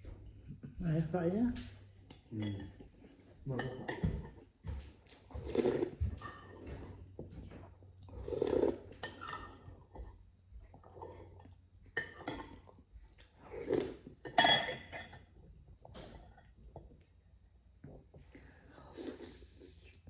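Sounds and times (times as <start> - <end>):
utensils clinking against a dish: 14.2 - 15.2.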